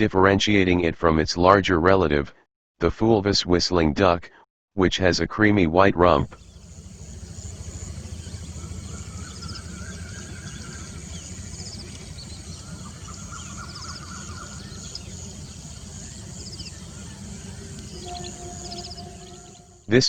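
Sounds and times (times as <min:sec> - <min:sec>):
low rumble: 0:06.2 - 0:19.9
bird chirps and trills: 0:06.3 - 0:19.9
buzzy notes: 0:06.3 - 0:19.9.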